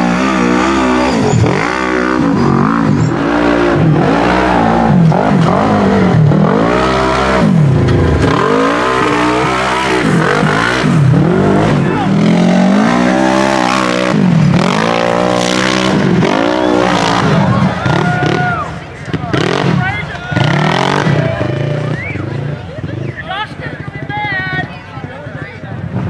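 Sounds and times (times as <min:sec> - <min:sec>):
utv engine revving: 0:00.0 - 0:23.2.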